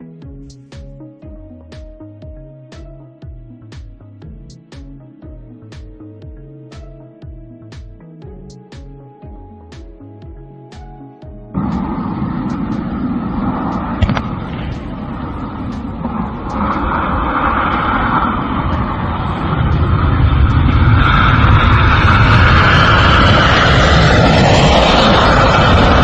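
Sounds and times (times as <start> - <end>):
jet engine roaring: 11.5 - 26.0.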